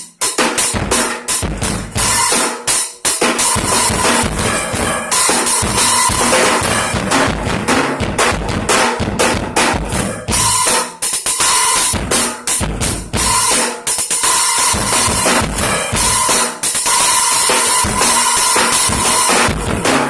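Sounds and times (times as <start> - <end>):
crashing cymbals: 0.0 - 7.9, 12.9 - 20.0
snare and bass drum hits: 0.0 - 20.0.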